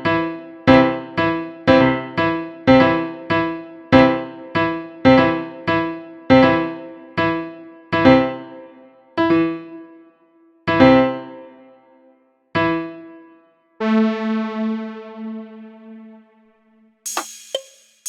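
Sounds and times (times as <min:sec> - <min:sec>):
piano chords: 0:00.0 - 0:10.0, 0:10.6 - 0:11.8.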